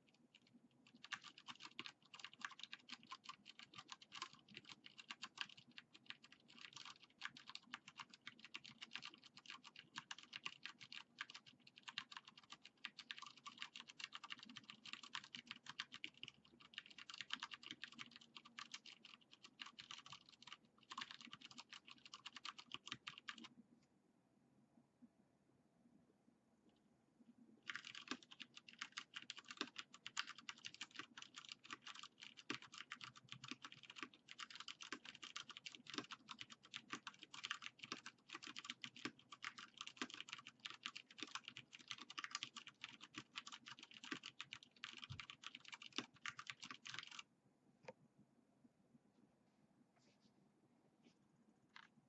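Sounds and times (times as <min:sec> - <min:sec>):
fast typing on mechanical keyboard: 0:00.0 - 0:23.5, 0:27.6 - 0:47.2.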